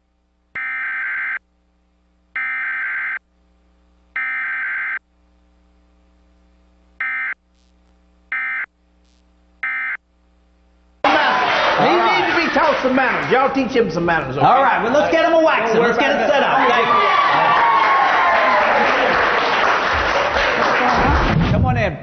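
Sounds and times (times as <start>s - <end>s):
raspy buzzing data bursts: 0.0s - 11.0s.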